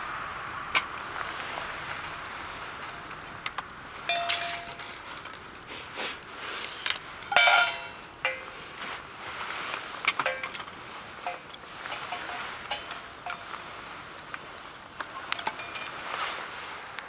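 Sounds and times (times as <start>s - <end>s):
light steady hiss: 0.0s - 17.0s
metal cookware clinking: 4.1s - 5.4s, 6.5s - 16.2s.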